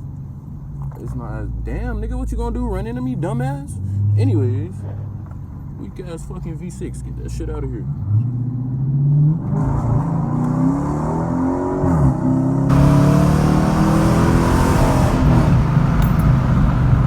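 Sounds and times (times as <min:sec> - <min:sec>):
car engine accelerating hard: 0:07.7 - 0:17.0.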